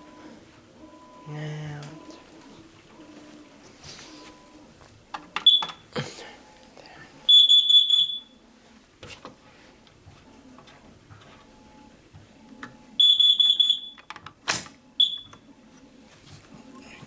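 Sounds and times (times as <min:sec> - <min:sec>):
smoke alarm rapid beeping: 0:05.4 - 0:05.8, 0:07.3 - 0:08.4, 0:13.0 - 0:14.1, 0:15.0 - 0:15.5.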